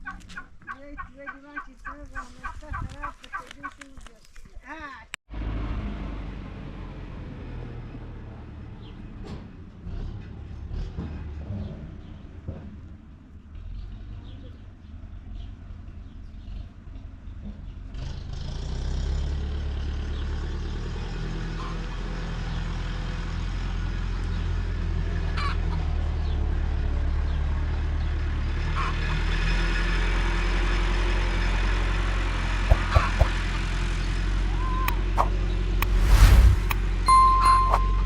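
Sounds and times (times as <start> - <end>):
engine low rumble: 5.3 - 18.3
sharp knocks: 32.7 - 33.3.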